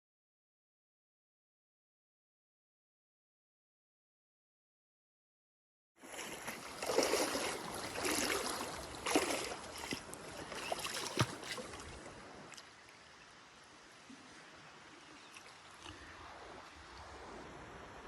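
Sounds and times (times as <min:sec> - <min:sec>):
water splashing around a boat: 0:06.0 - 0:18.0.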